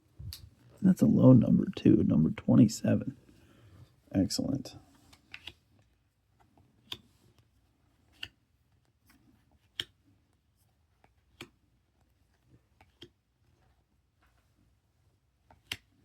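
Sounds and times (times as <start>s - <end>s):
cards clicking against cards: 5.0s - 5.8s, 6.4s - 10.0s, 11.0s - 11.6s, 12.8s - 13.2s, 15.5s - 16.0s.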